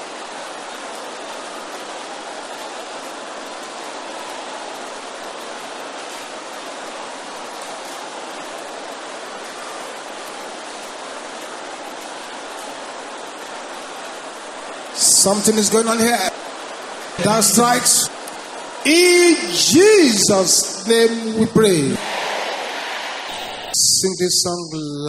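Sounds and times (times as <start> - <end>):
congregation praying aloud: 15.0 - 16.3, 17.2 - 18.2, 18.8 - 24.0.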